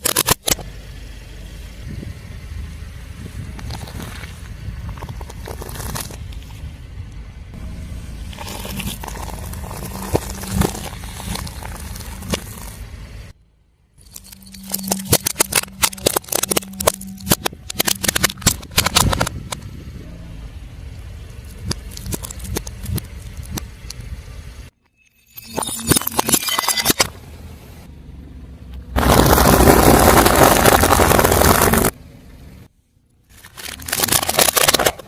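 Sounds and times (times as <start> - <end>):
sharp cracks and snaps: 0.0 - 0.7, 14.4 - 19.7
low engine hum: 0.6 - 24.8, 27.1 - 33.1
tyre crushing crunchy objects: 3.6 - 6.5, 8.2 - 12.8, 21.4 - 23.7, 29.0 - 32.0, 33.3 - 35.0.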